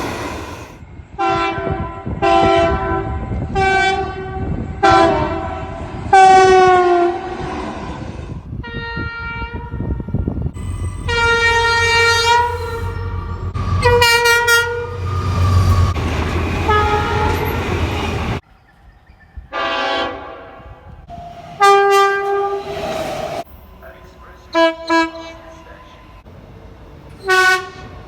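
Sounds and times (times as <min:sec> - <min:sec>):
moving train rumble: 0:00.0 - 0:28.0
train air horn blasts: 0:01.2 - 0:07.3, 0:08.6 - 0:16.0, 0:16.6 - 0:17.7, 0:19.5 - 0:20.9, 0:21.6 - 0:22.9, 0:24.5 - 0:25.5, 0:27.2 - 0:27.9.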